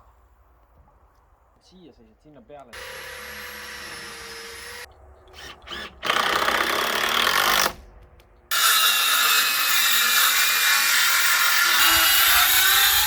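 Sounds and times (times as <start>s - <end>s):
power tool whining: 8.5s - 13.0s.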